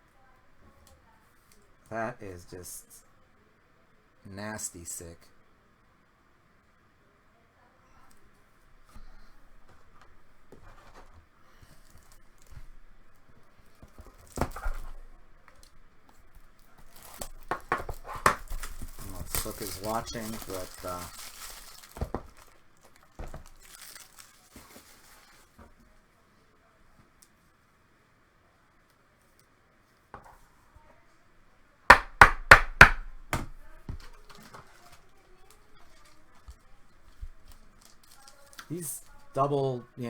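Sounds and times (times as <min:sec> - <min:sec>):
cards and plastic holders rustling: 0:08.8 - 0:25.7, 0:33.0 - 0:39.6
sharp knocks on hard surface: 0:31.9 - 0:33.6.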